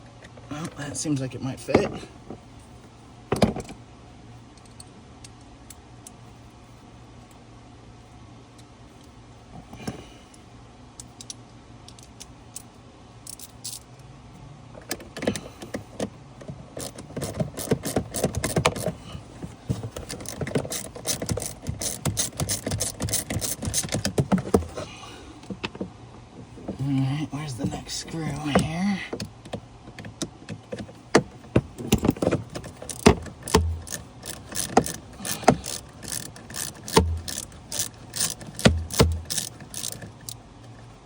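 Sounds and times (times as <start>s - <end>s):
socket ratchet clicking: 16.8s - 19.0s, 20.0s - 24.6s, 31.8s - 40.4s.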